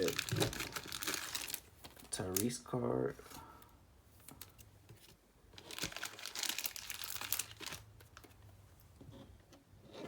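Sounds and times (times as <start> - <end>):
plastic packaging crinkling: 0.0 - 2.7, 5.6 - 8.4.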